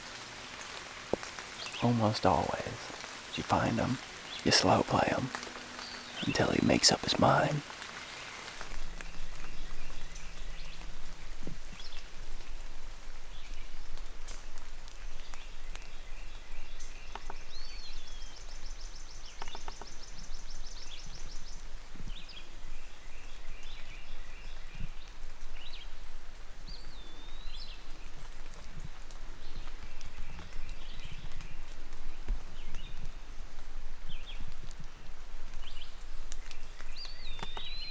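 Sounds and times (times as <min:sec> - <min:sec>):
steady hiss: 0:00.0 - 0:15.2
light rain dripping: 0:00.0 - 0:37.9
songbirds singing: 0:00.0 - 0:37.9.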